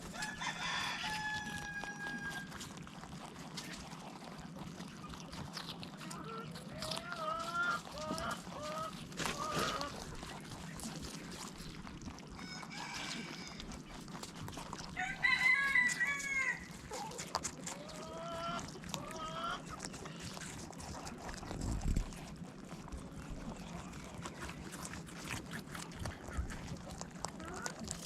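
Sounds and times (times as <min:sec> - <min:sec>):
chickens calling: 0:00.0 - 0:28.0
rooster crowing: 0:00.1 - 0:02.6, 0:12.4 - 0:13.8, 0:14.9 - 0:16.8.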